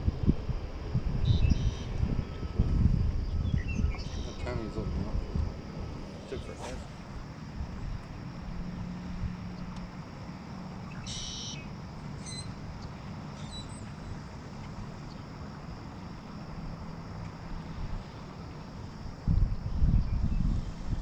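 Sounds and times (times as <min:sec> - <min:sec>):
wind noise: 0:00.0 - 0:10.1, 0:15.7 - 0:21.0
faint low hum: 0:00.0 - 0:21.0.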